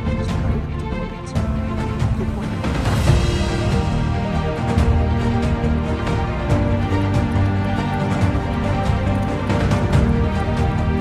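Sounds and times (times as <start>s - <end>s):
music with steady beat and bass: 0.0s - 11.0s.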